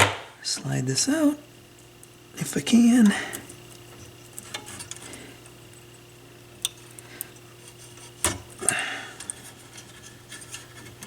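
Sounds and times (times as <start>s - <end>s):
faint steady hum: 0.0s - 11.0s.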